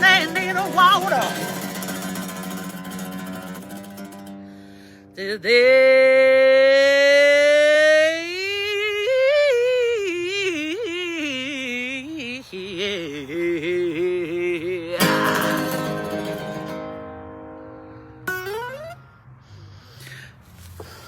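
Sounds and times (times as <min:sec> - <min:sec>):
wordless vocal runs: 0:00.0 - 0:01.8
soft acoustic guitar: 0:00.0 - 0:06.0, 0:12.8 - 0:19.2.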